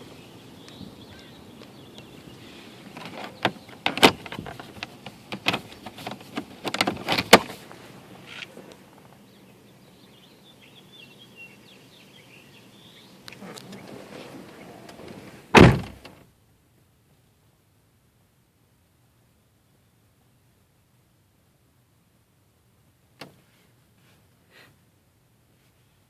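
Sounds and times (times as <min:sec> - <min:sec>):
sharp clicks and knocks: 0:02.9 - 0:07.5
faint high chirping: 0:09.1 - 0:13.4.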